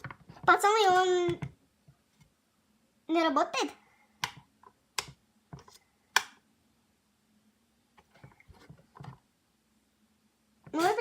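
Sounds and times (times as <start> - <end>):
kettle switch plastic clicks: 6.2 - 6.4.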